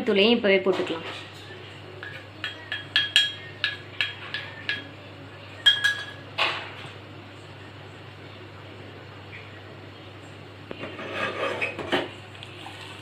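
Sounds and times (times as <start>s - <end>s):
metal spoon tapping metal pan: 2.0s - 4.9s, 5.6s - 6.2s.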